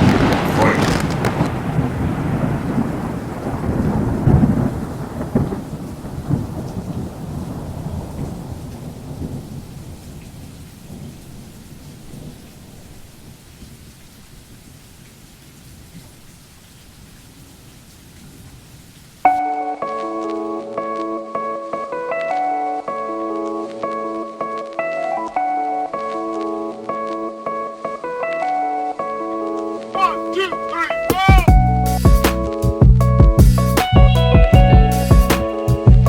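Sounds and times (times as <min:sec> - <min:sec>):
loud rumbling with crackling surges: 0:00.0 - 0:05.6.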